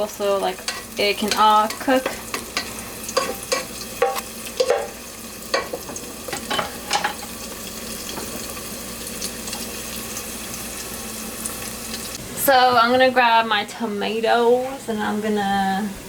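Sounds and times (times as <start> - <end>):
garlic and onion sizzling in oil: 0.0 - 12.6
utensil scraping a pot: 0.3 - 7.4.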